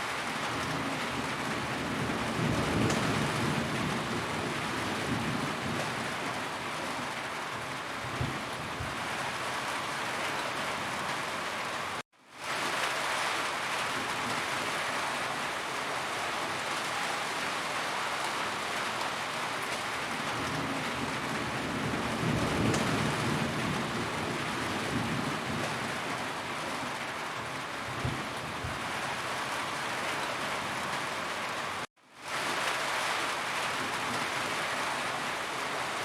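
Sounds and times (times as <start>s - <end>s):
heavy rain on a roof: 0.0s - 36.0s
low rumble of thunder: 0.5s - 6.5s, 8.0s - 9.2s, 20.3s - 26.3s, 27.8s - 29.1s.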